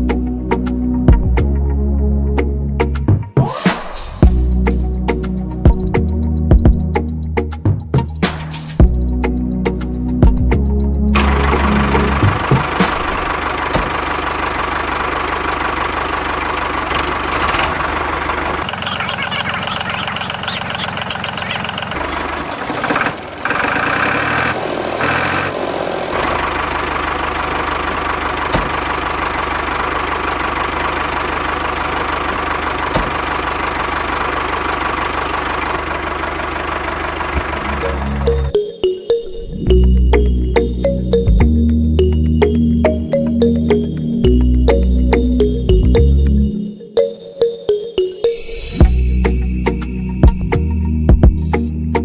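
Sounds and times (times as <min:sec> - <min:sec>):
small engine running: 0:10.0 - 0:38.6.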